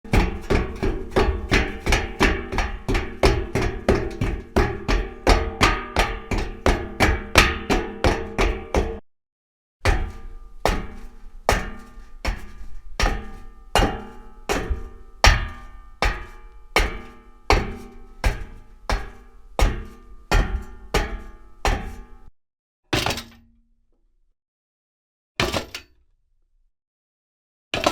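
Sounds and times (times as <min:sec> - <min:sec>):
footsteps on metal grate: 0:00.0 - 0:09.0, 0:09.9 - 0:22.3.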